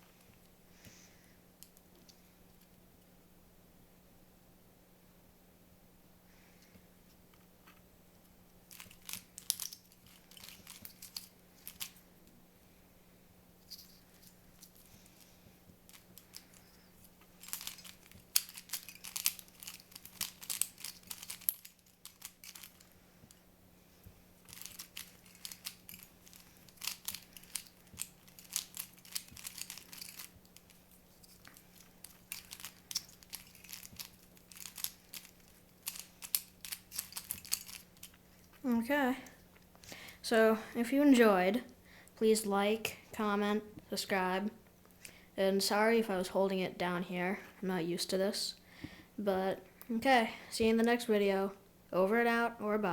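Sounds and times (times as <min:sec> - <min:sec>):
faint low hum: 0:00.0 - 0:52.9
speed cube clicking: 0:17.4 - 0:22.8, 0:24.5 - 0:30.7, 0:31.5 - 0:38.1.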